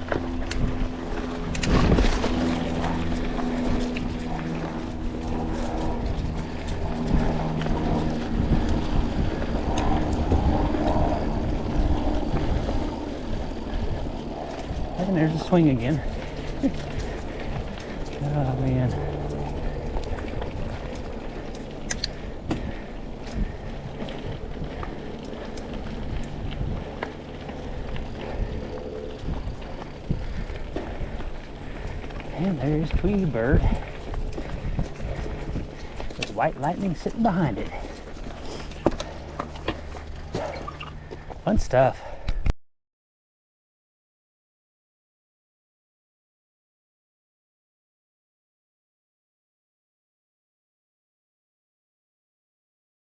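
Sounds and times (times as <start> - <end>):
wind buffeting microphone: 0.0 - 41.0
bike tyres rolling on dirt: 0.0 - 42.2
bike clicks and rattles: 0.0 - 42.5.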